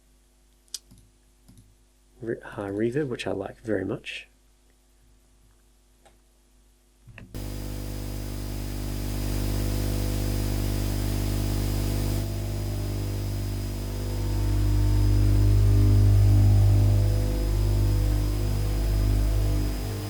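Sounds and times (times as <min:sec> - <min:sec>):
reverberant white noise hiss: 0:05.8 - 0:20.0
low held drone tones: 0:07.4 - 0:20.0.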